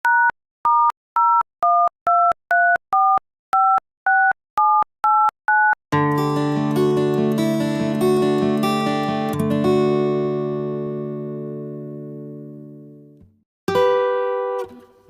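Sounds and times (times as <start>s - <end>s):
telephone keypad beeps: 0.1s - 5.8s
acoustic guitar strumming: 6.0s - 13.1s, 13.7s - 15.0s.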